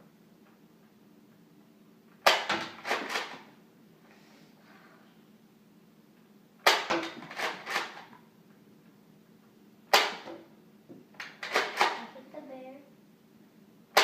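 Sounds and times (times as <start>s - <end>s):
toy blaster firing snap: 9.9s - 10.3s.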